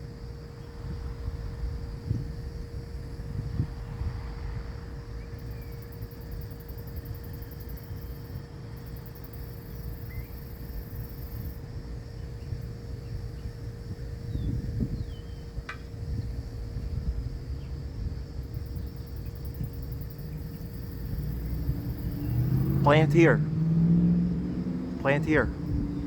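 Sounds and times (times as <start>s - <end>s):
rapid insect trill: 0.0s - 26.0s
faint bird chirps: 9.7s - 10.5s.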